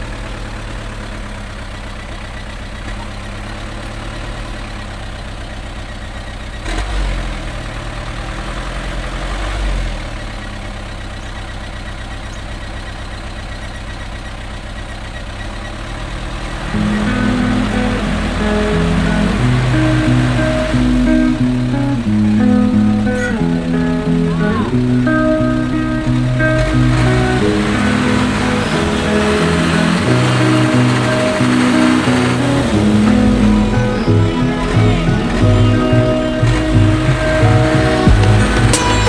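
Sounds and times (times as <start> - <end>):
truck engine idling: 10.6 - 39.0
background music: 16.7 - 39.0.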